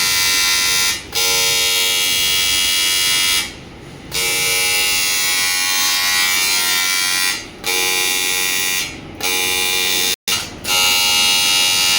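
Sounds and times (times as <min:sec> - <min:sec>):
welding arc buzzing: 0:00.0 - 0:03.5, 0:04.1 - 0:11.9.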